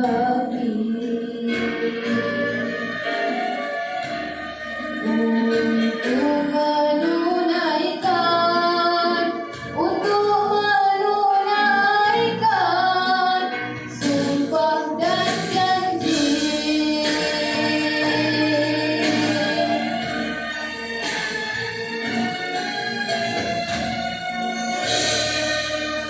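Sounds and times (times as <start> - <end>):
musical backing: 0.0 - 26.0
boy singing: 5.0 - 19.9.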